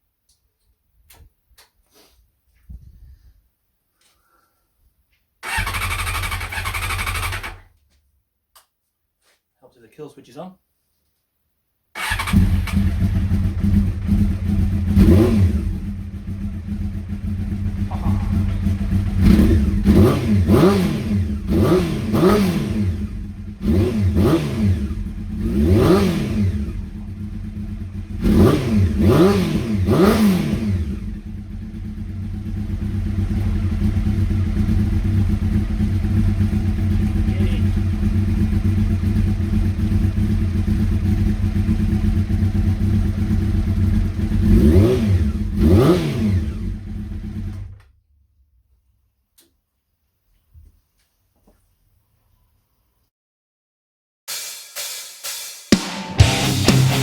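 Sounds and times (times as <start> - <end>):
motorcycle engine revving and idling: 5.4 - 7.7, 12.0 - 47.8, 56.2 - 57.0.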